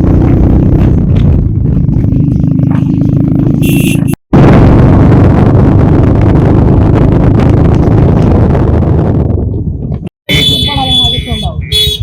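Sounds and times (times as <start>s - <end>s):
motorcycle engine rumble: 0.0s - 12.0s.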